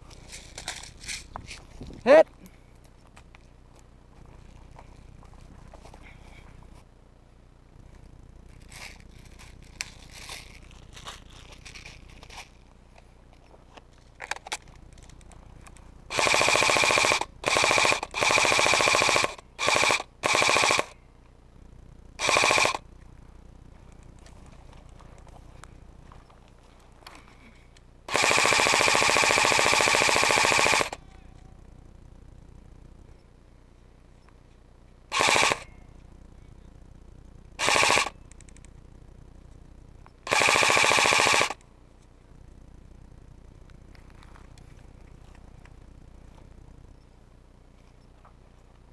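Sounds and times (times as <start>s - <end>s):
airsoft gun firing full auto: 16.1s - 21.0s, 22.2s - 22.8s, 28.1s - 31.0s, 35.1s - 35.8s, 37.6s - 38.2s, 40.2s - 41.6s.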